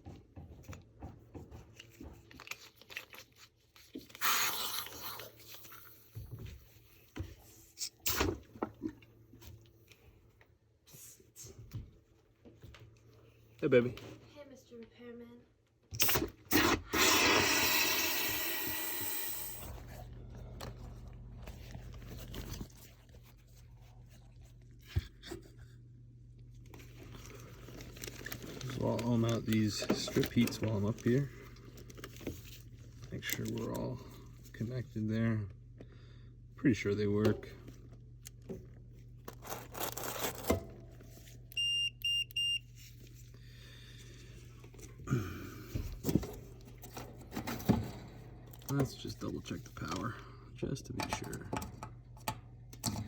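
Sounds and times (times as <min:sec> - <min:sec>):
multimeter beeps: 0:41.5 - 0:42.7.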